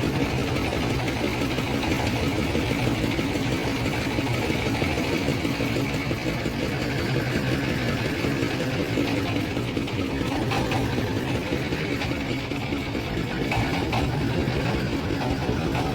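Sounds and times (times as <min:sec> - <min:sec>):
boat engine running: 0:00.0 - 0:15.9.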